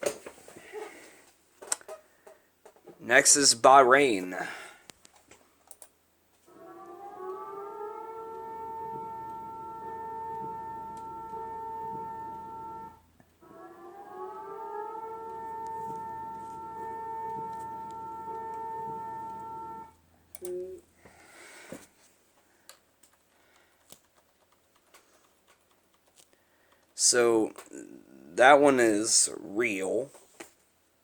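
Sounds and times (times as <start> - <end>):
warning siren: 6.4 - 20.1.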